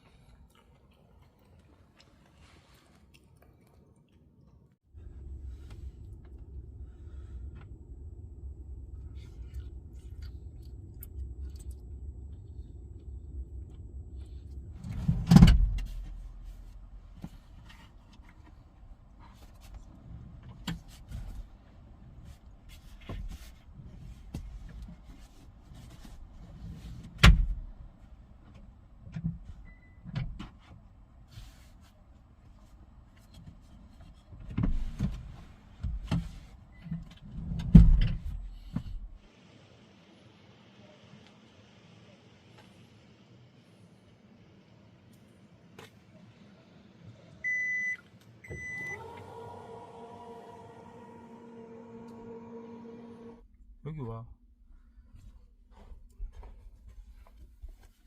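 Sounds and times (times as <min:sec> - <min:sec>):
low steady rumble: 0:04.4 - 0:30.0, 0:30.8 - 0:39.3, 0:46.5 - 0:58.0.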